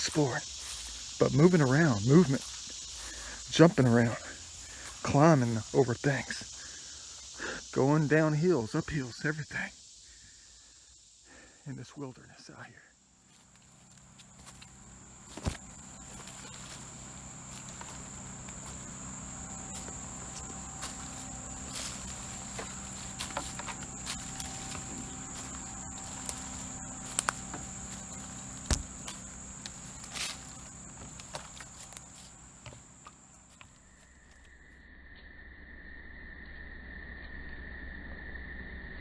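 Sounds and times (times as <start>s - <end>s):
footsteps on rough ground: 0.0s - 9.0s, 13.1s - 34.5s
insects chirring: 0.0s - 34.9s
faint low hum: 13.2s - 34.4s.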